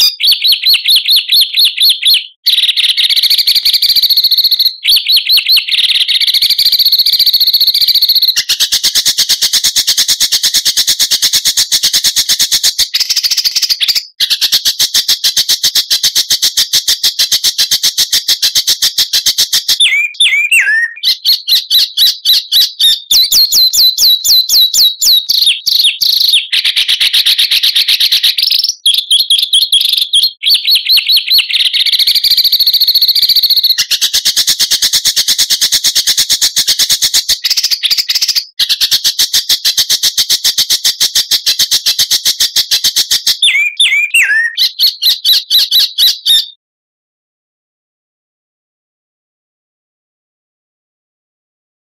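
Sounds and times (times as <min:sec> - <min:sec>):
songbird song: 0:19.6 - 0:34.0, 0:43.4 - 0:46.6
swooping bird calls: 0:19.8 - 0:21.3, 0:43.4 - 0:44.8.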